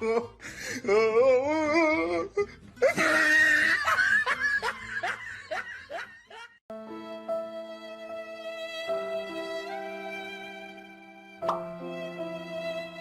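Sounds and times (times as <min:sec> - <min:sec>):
person laughing: 0:02.8 - 0:06.6.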